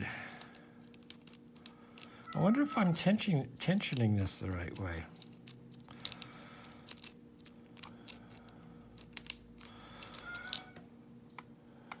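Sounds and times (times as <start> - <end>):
lock pick clicking and scraping: 0.4 - 3.1, 5.2 - 10.8.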